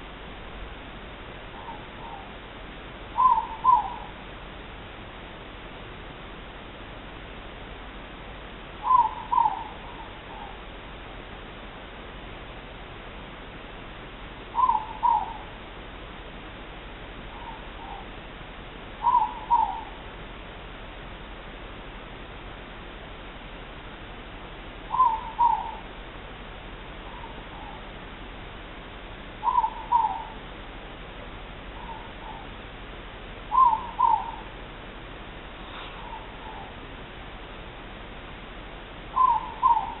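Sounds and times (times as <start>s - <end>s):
steady hiss: 0.0s - 40.0s
owl two-note call: 3.2s - 4.1s, 8.8s - 9.8s, 14.5s - 15.4s, 19.0s - 20.0s, 24.9s - 25.8s, 29.4s - 30.4s, 33.5s - 34.5s, 39.1s - 40.0s.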